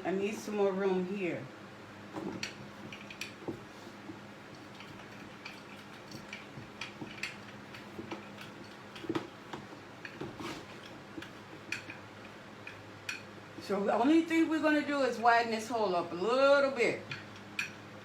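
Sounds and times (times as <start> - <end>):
faint steady hum: 0.0 - 18.0
grinder parts clicking and knocking: 2.2 - 13.4, 17.0 - 18.0.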